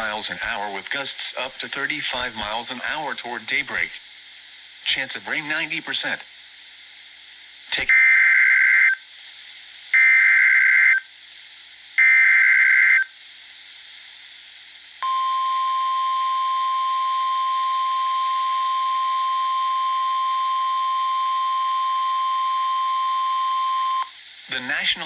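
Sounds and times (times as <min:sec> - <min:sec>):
steady alarm tone: 0:07.9 - 0:09.0, 0:10.0 - 0:11.0, 0:12.0 - 0:13.1, 0:15.0 - 0:24.1.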